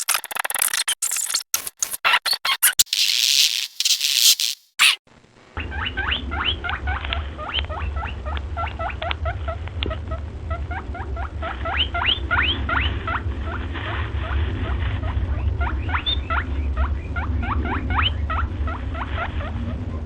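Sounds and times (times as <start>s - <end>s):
high rising squeaks: 0.0s - 5.0s
steady low rumble: 5.6s - 20.0s.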